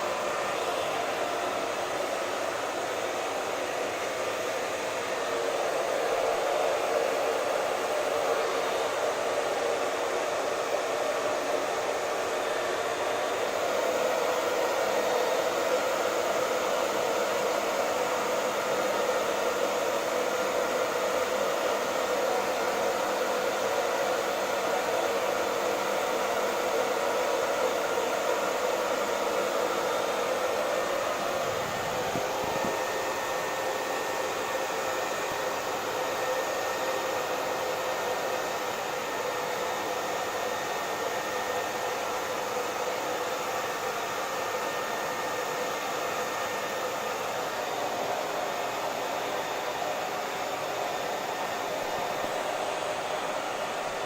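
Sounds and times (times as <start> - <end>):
hair dryer running: 0.0 - 54.0.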